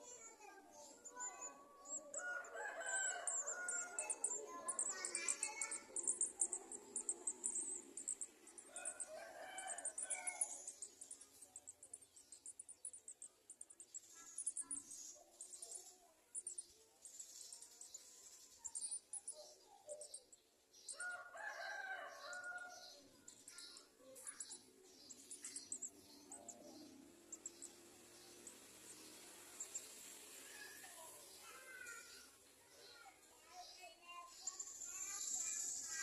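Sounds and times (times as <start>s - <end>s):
small birds chirping rapidly: 0.0s - 36.0s
rooster crowing: 2.2s - 4.0s, 21.0s - 22.7s.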